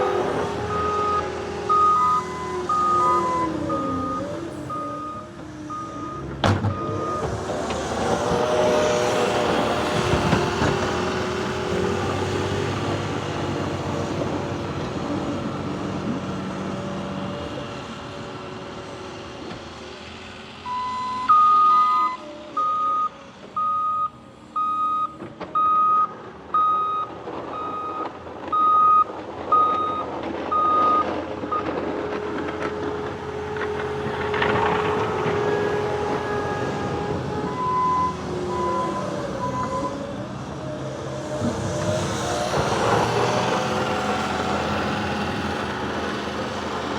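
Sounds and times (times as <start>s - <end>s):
diesel engine revving: 0.0s - 46.9s
backup alarm beeping: 0.7s - 7.3s, 20.7s - 31.7s.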